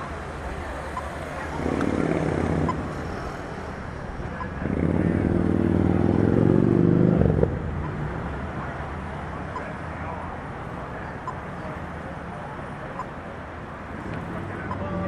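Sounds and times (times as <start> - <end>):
street traffic: 0.0 - 15.0
vehicle engine accelerating: 1.2 - 10.2.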